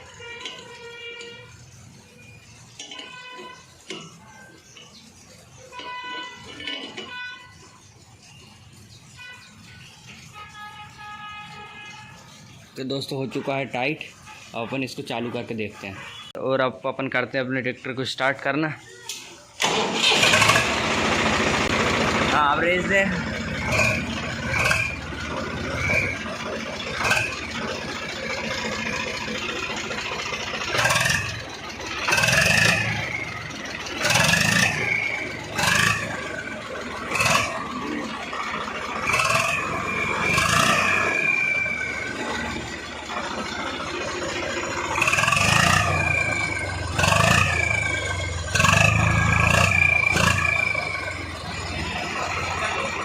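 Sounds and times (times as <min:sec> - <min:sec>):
tractor diesel engine revving: 0:19.6 - 0:53.0
turbo whistle: 0:39.1 - 0:42.4, 0:45.0 - 0:48.3, 0:49.1 - 0:51.3.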